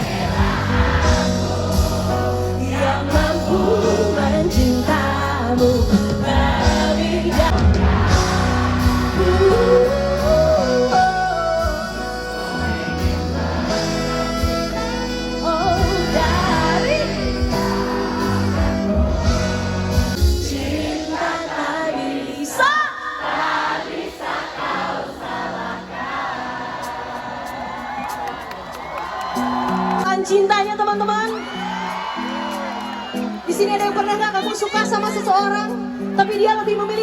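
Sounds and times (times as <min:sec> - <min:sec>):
live pop ballad band: 0:00.0 - 0:22.5
people singing: 0:00.0 - 0:27.9.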